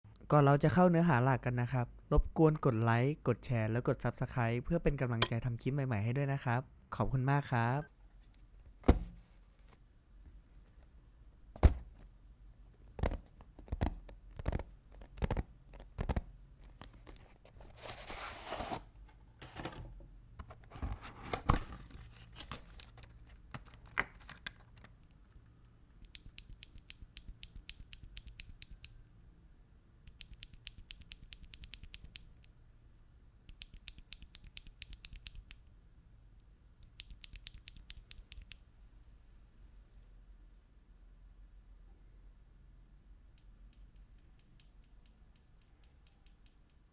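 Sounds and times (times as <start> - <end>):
brief scrape: 17.8 - 18.9.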